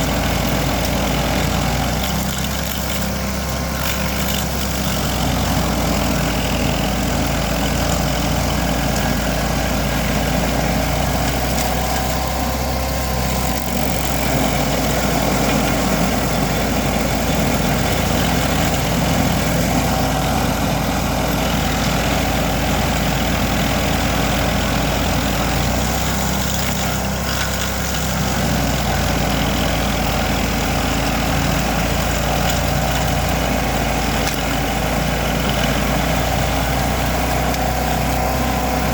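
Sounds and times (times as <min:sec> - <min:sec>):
stump grinder engine running: 0:00.0 - 0:38.9.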